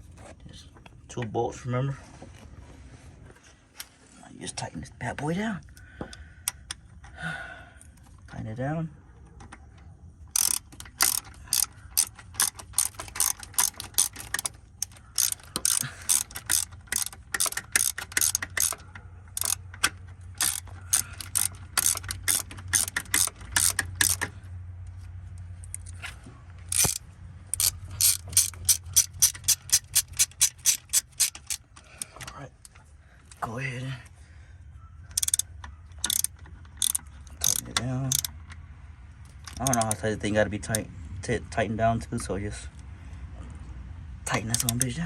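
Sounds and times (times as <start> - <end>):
socket ratchet clicking: 10.3 - 24.4, 26.6 - 32.3, 35.1 - 38.6, 39.3 - 40.0, 44.4 - 45.0.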